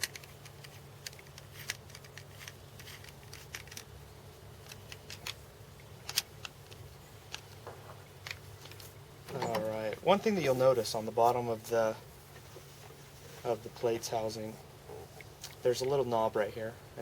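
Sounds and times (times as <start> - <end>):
small parts clicking: 0.0 - 4.0, 4.6 - 8.9.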